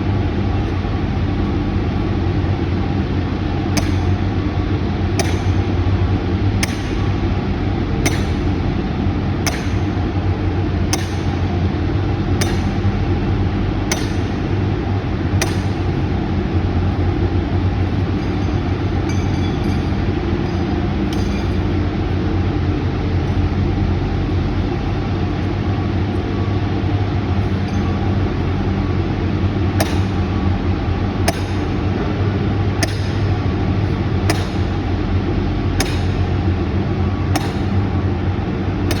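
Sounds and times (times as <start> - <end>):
sledgehammer striking steel pins: 3.8 - 4.3, 5.2 - 5.7, 6.6 - 7.1, 8.1 - 8.6, 9.4 - 10.0, 10.9 - 11.4, 12.4 - 12.8, 13.9 - 14.4, 15.4 - 16.0, 18.1 - 22.2, 29.8 - 30.3, 31.3 - 31.8, 32.8 - 33.3, 34.3 - 34.9, 35.8 - 36.2, 37.4 - 37.7.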